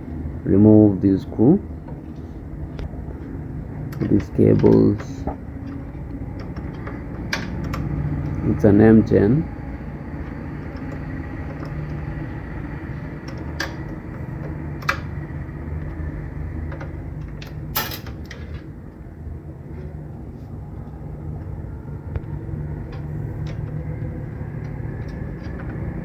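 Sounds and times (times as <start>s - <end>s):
steady low hum: 0.0s - 26.0s
metallic clicks and knocks of tools: 3.9s - 8.4s, 16.7s - 18.6s
short metallic rattle: 17.7s - 18.5s.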